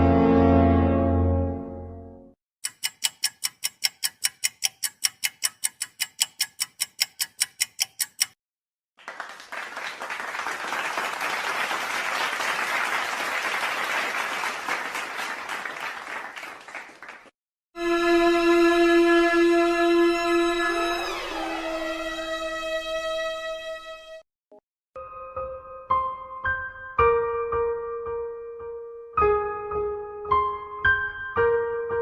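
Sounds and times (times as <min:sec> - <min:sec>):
rapid ticking: 0:02.6 - 0:08.4
crowd applauding: 0:09.0 - 0:17.3.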